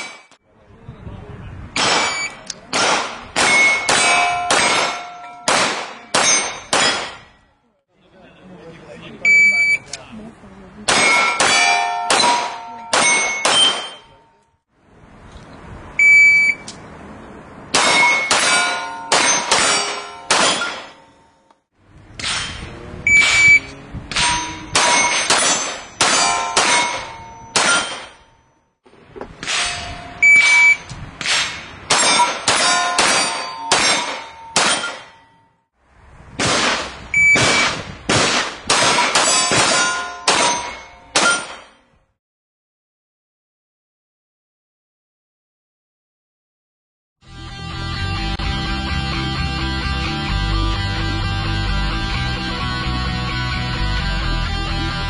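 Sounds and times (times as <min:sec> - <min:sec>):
handgun shots: 0:01.8 - 0:07.2, 0:36.4 - 0:41.7
steel target plates clanging: 0:03.4 - 0:07.6, 0:11.0 - 0:14.4, 0:17.8 - 0:21.4, 0:22.2 - 0:28.4, 0:29.3 - 0:35.5, 0:38.9 - 0:41.9
shot timer beep: 0:09.3 - 0:09.8, 0:16.0 - 0:16.7, 0:23.1 - 0:23.7, 0:30.2 - 0:30.9, 0:37.2 - 0:37.7.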